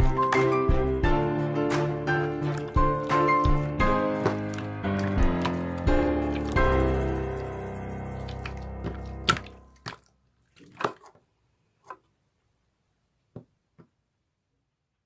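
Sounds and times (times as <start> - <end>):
background music: 0.0 - 9.8
slime squelching: 1.9 - 12.2.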